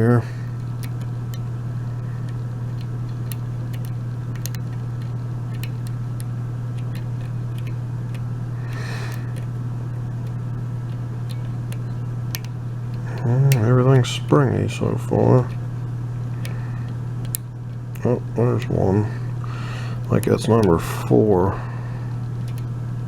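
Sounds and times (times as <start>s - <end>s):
steady low hum: 0.0s - 23.0s
lock pick clicking: 0.6s - 21.2s, 22.2s - 22.7s.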